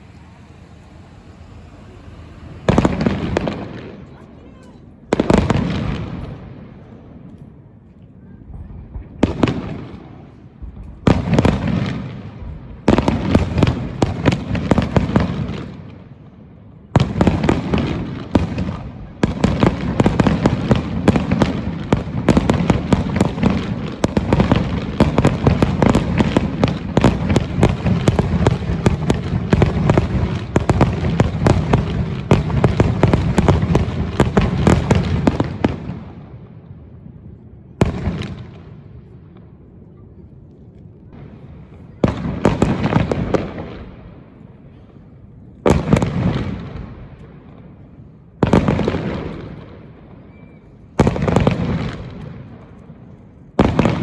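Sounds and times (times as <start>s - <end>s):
booming firework shell bursts: 0.0s - 4.2s
rapid firework bangs and crackles: 0.0s - 7.4s, 8.4s - 39.8s, 41.1s - 54.0s.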